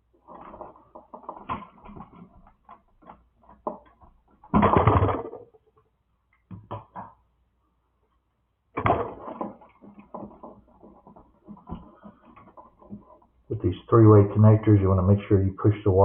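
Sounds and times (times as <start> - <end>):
hands handling wires and connectors: 0.2 - 4.6, 9.2 - 13.5.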